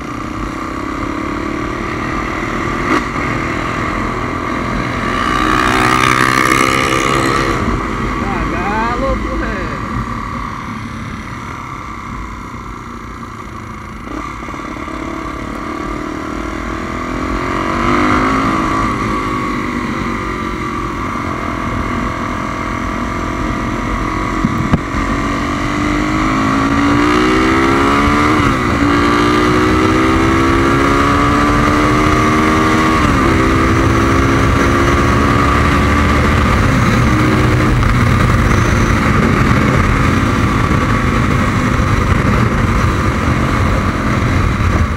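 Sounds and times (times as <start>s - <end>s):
motorcycle engine accelerating: 0.0s - 44.9s
wind rumble on microphone: 23.6s - 44.9s.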